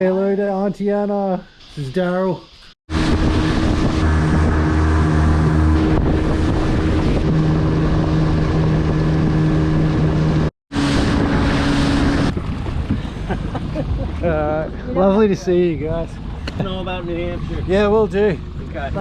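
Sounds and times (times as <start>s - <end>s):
rushing wind-like noise: 2.9s - 14.8s
engine drone: 2.9s - 19.0s.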